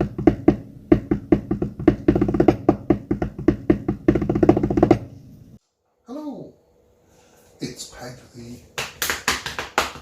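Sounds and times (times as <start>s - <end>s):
drumming on hard surface: 0.0s - 5.6s.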